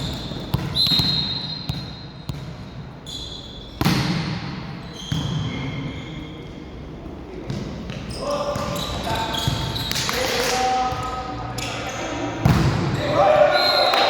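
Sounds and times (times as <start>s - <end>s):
shoes squeaking on floor: 3.0s - 3.8s, 4.8s - 6.5s, 8.0s - 10.1s.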